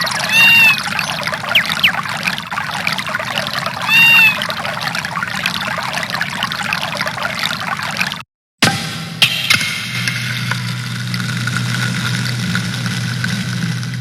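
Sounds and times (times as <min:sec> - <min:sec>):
rising-and-falling call: 0:00.0 - 0:08.1
running water: 0:00.0 - 0:08.2.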